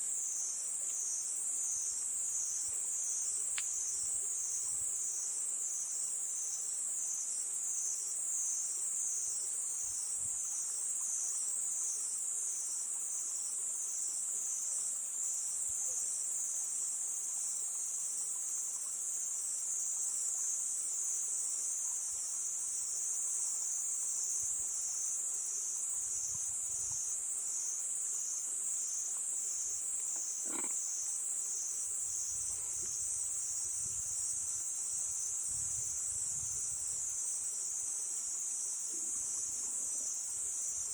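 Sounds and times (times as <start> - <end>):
crickets chirping: 0.0 - 40.9
low rumble of wind: 32.0 - 37.2.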